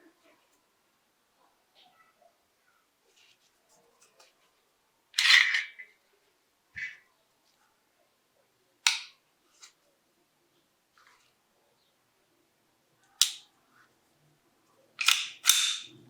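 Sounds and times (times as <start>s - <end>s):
pistol parts clicking and clacking: 5.2s - 5.8s, 8.9s - 9.1s, 13.2s - 13.5s, 15.0s - 16.0s.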